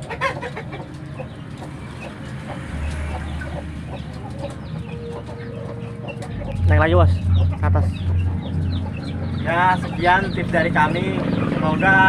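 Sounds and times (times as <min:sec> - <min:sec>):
chickens clucking: 0:00.0 - 0:12.0
low steady hum: 0:04.9 - 0:11.2.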